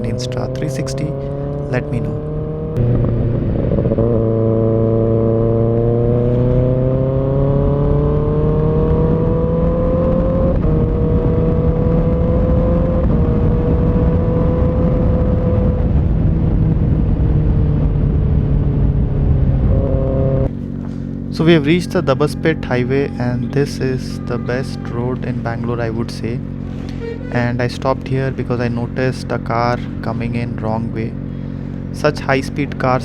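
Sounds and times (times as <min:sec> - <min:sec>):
motorcycle engine on highway: 0:00.0 - 0:33.0.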